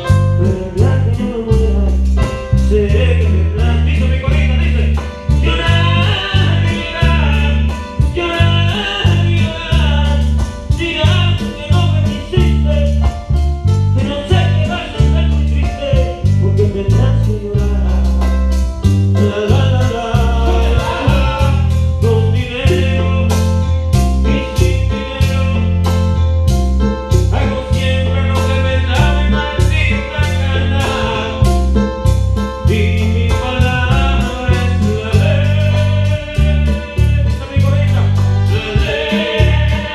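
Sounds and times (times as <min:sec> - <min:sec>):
heavy bass line: 0:00.0 - 0:39.9
live band playing amplified music: 0:00.0 - 0:39.9
steady percussion beat: 0:00.0 - 0:39.9
lead singer vocals: 0:02.7 - 0:12.7, 0:19.2 - 0:23.4, 0:24.2 - 0:25.9, 0:27.3 - 0:31.8, 0:32.6 - 0:39.9.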